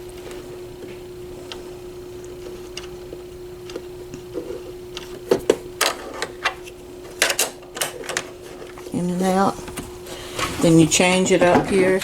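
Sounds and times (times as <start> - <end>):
steady hum: 0.0 - 12.0
plastic clicks and clatter: 2.4 - 8.9.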